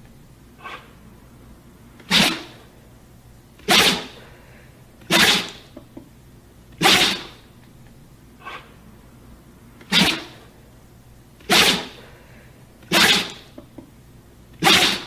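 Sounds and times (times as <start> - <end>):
dog sneezing: 0.6 - 0.9, 2.1 - 2.6, 3.6 - 4.2, 5.0 - 5.6, 6.8 - 7.4, 9.9 - 10.4, 11.4 - 12.1, 12.9 - 13.5, 14.6 - 15.0.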